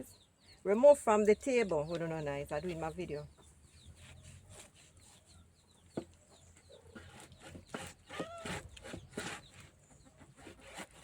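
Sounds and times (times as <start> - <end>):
chickens clucking: 1.8 - 10.4.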